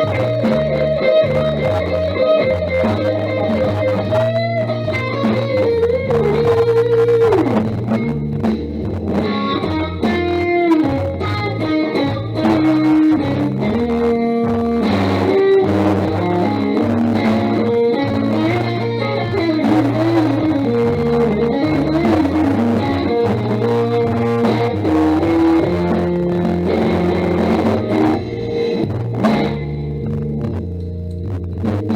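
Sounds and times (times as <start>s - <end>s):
bass line: 0.0s - 31.9s
guitar melody with bent notes: 0.0s - 31.9s.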